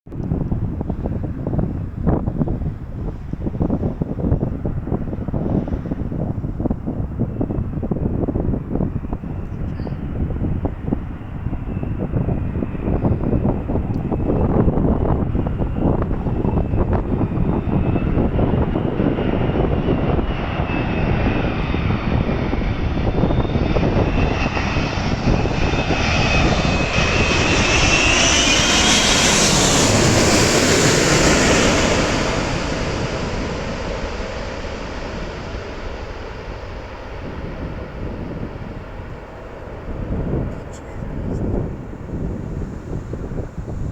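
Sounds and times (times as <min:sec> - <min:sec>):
jet engines roaring overhead: 0:00.1 - 0:43.9
high whine gliding down: 0:13.0 - 0:43.9.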